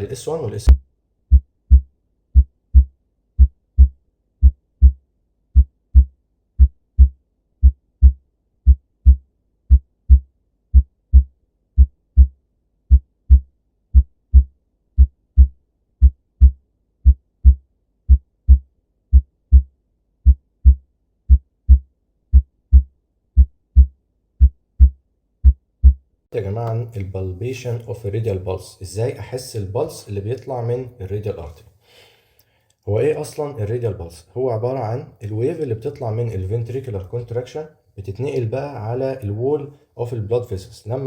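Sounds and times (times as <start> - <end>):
heartbeat thumps: 0.7 - 5.0, 5.6 - 26.0.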